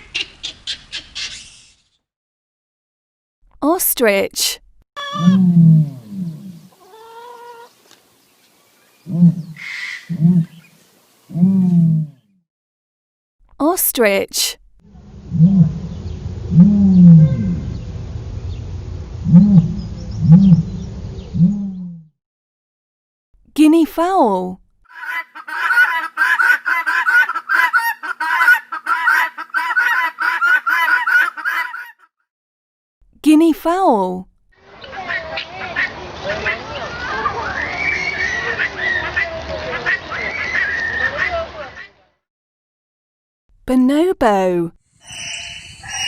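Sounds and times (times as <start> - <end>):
guinea fowl cackling: 6.7 - 7.7, 9.4 - 10.6, 24.9 - 32.1, 34.7 - 41.9
ostrich calls: 24.9 - 31.9.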